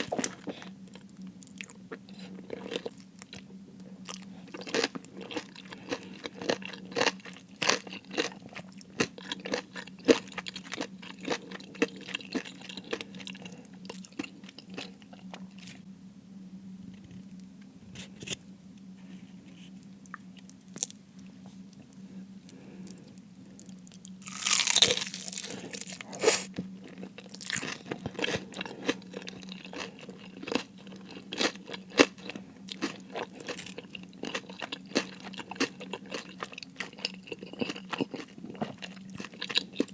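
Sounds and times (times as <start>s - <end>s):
faint low hum: 0.0s - 39.9s
crunching bites of fried food: 4.5s - 13.2s, 24.2s - 39.9s.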